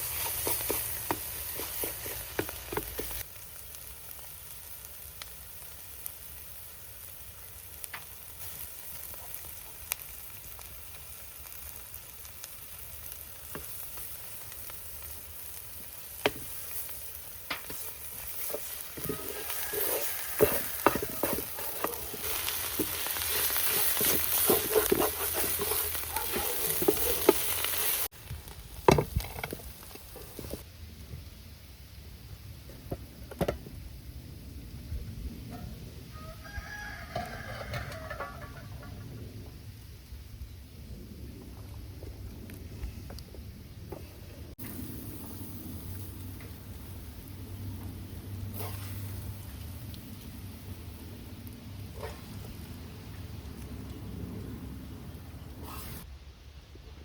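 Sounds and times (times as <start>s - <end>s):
food sizzling in a pan: 0.0s - 28.2s.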